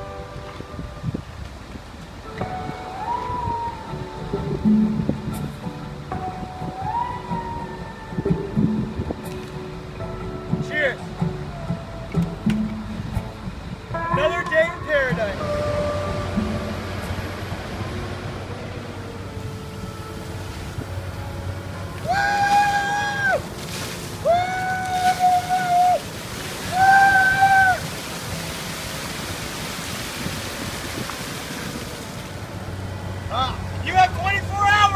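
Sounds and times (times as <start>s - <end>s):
long high held notes: 0.0s - 34.9s
water pouring and splashing: 19.3s - 34.9s.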